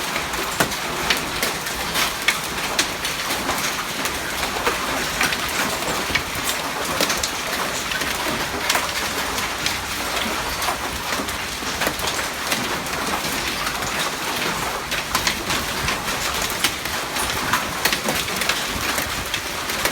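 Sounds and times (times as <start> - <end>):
hail pelting hard surfaces: 0.0 - 19.9.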